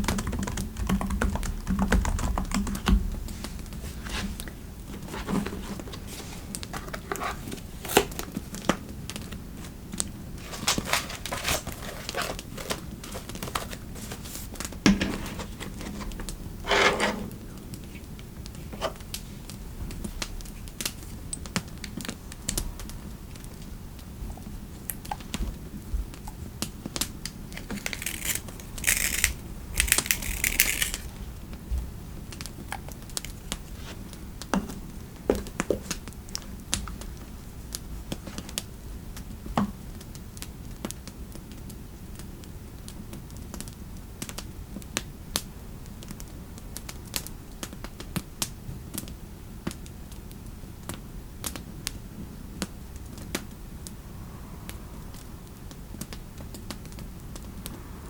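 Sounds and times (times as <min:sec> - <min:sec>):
computer keyboard typing: 0:00.0 - 0:02.9, 0:27.6 - 0:31.1
rustling: 0:03.3 - 0:08.8, 0:09.5 - 0:18.1, 0:27.4 - 0:31.2.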